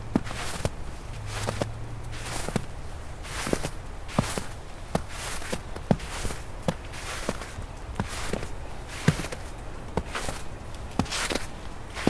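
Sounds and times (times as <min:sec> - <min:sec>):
footsteps crunching in snow: 0:00.0 - 0:12.0.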